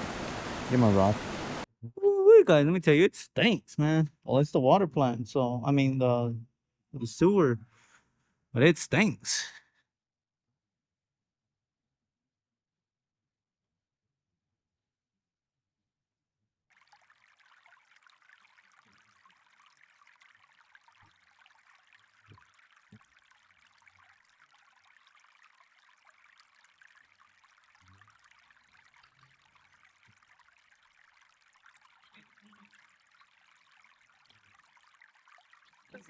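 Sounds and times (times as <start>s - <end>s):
flowing canal water: 0.0s - 1.7s, 16.7s - 36.0s.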